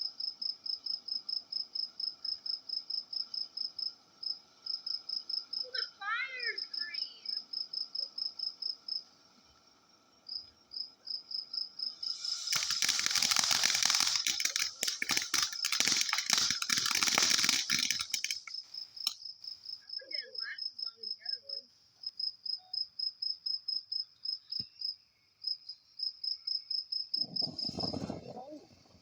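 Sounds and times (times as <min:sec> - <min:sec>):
cricket chirping: 0:00.0 - 0:29.0
firework crackling: 0:11.8 - 0:19.2, 0:27.2 - 0:29.0.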